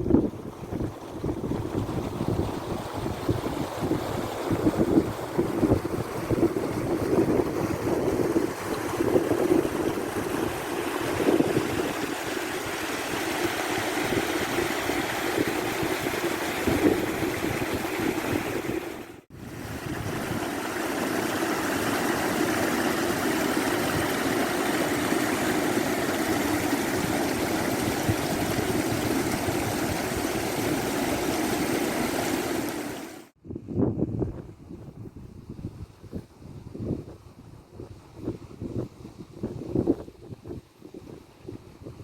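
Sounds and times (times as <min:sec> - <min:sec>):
waterfall rushing: 0:08.6 - 0:33.3.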